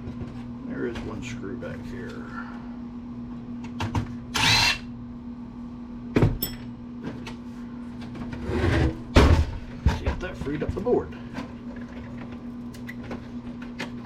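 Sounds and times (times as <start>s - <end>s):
power driver whine: 3.6s - 5.4s.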